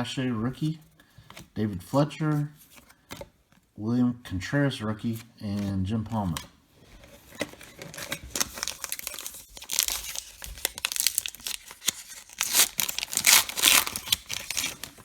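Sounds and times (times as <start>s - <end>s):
wrapper tearing and crinkling: 7.4s - 15.0s.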